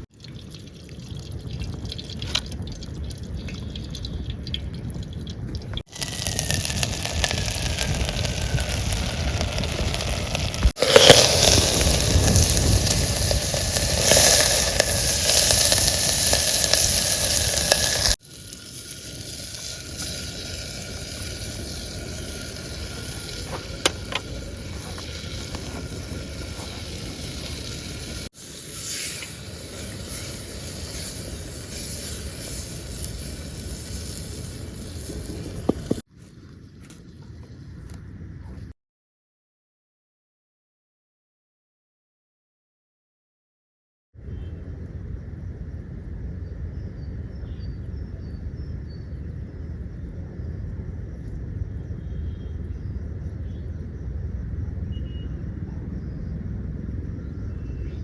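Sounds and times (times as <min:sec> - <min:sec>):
food sizzling in a pot: 0:05.8 - 0:36.1.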